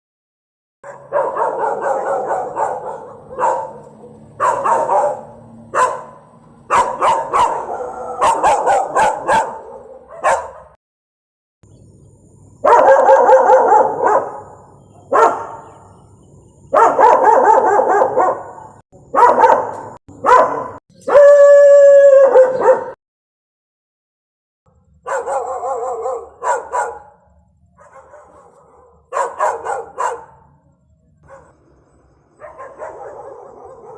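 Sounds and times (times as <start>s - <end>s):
long held dog cry: 0.8s - 10.7s, 20.2s - 23.0s, 25.0s - 30.5s
dogs barking: 0.8s - 10.8s, 12.6s - 15.9s, 16.7s - 23.0s, 25.0s - 31.6s, 32.4s - 33.9s.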